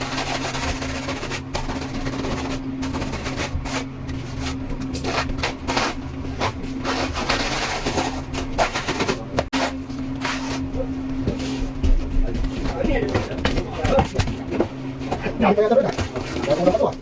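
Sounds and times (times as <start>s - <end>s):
machine humming: 0.0s - 17.0s.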